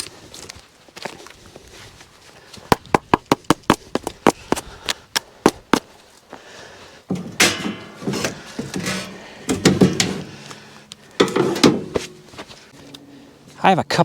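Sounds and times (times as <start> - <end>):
door knocks scrapes and rattles: 7.1 - 10.6, 11.2 - 12.6.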